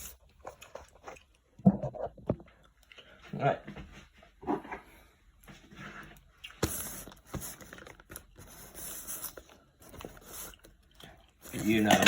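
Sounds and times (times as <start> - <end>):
paper crinkling and tearing: 11.4 - 12.0.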